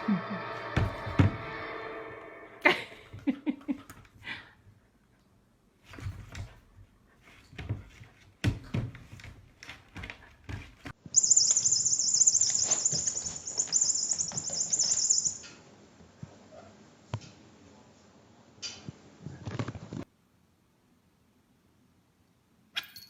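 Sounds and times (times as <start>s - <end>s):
loud high-pitched chirping: 11.2s - 15.5s.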